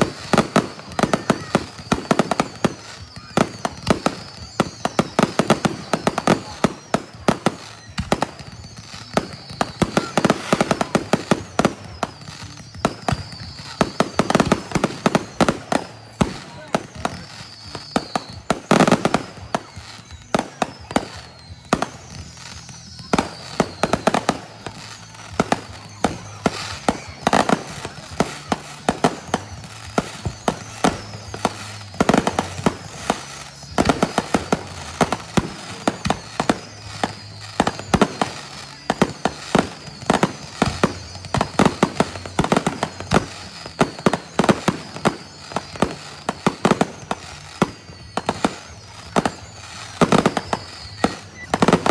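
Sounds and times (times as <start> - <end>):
falling firework whistle: 0.0 - 51.9
fireworks bangs and crackles: 0.0 - 51.9.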